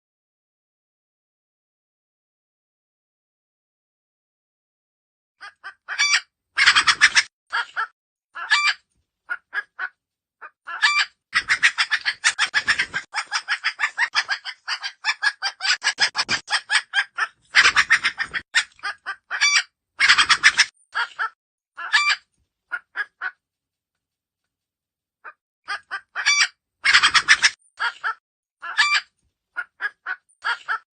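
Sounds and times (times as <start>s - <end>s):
rooster squawking: 5.4s - 9.9s, 10.7s - 23.4s, 25.7s - 30.8s.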